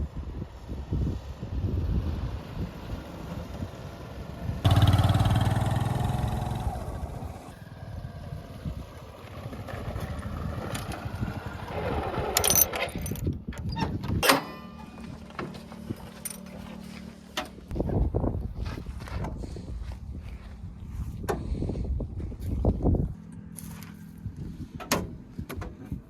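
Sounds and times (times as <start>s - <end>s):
heavy vehicle engine revving: 4.4s - 7.6s.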